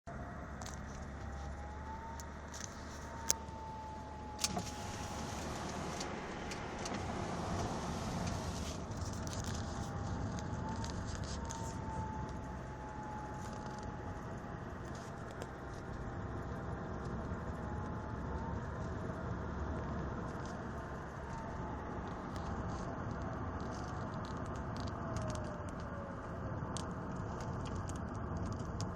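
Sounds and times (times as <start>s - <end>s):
engine and road noise: 0.0s - 28.9s
turbocharger whistling: 1.2s - 14.8s
sharp rattles and clicks: 21.3s - 28.9s.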